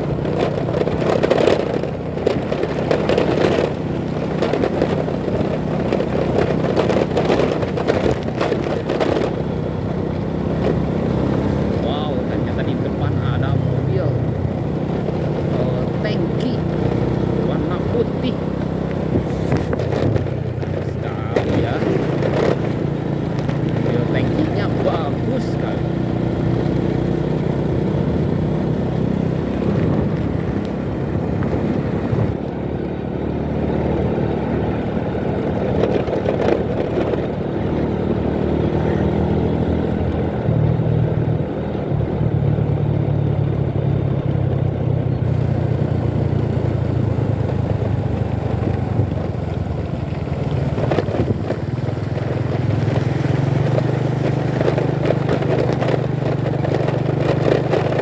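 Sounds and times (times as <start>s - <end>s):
motorcycle engine running: 0.0s - 58.0s
road noise: 0.0s - 58.0s.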